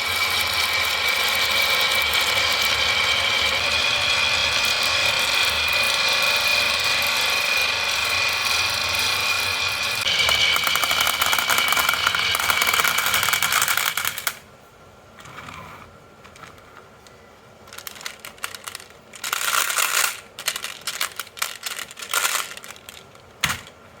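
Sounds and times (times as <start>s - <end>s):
marbles rolling on wooden run: 0.1s - 14.3s, 17.7s - 23.2s
marbles clattering and clacking: 10.0s - 14.3s, 17.7s - 23.7s.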